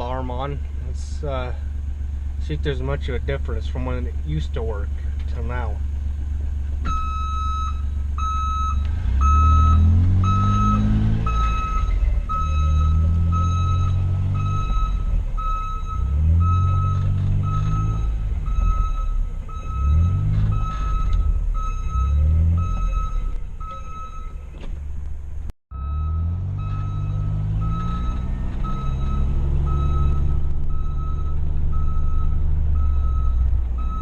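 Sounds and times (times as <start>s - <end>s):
utility vehicle engine revving: 0.0s - 34.0s
backup alarm beeping: 6.8s - 24.6s, 25.7s - 34.0s.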